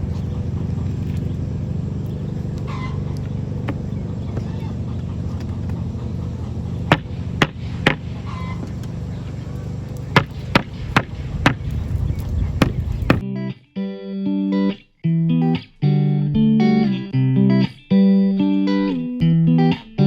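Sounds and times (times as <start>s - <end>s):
low engine-like hum: 0.0s - 13.2s
hammer striking wood: 6.8s - 8.2s, 10.1s - 11.7s.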